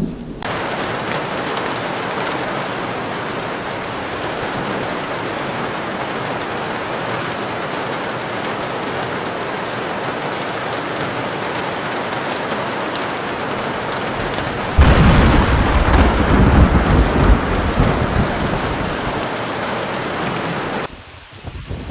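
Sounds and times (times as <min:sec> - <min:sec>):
heavy rain falling: 0:00.0 - 0:21.9
raindrop ticks: 0:10.7 - 0:21.9.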